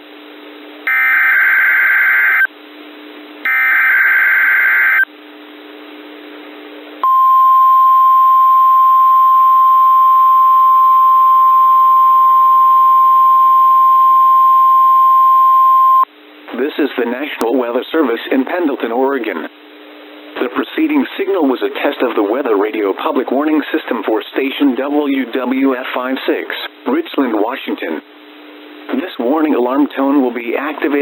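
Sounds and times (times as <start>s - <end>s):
steady warning alarm tone: 0.9s - 2.5s, 3.5s - 5.1s, 7.0s - 16.1s
radio hiss: 16.5s - 19.5s.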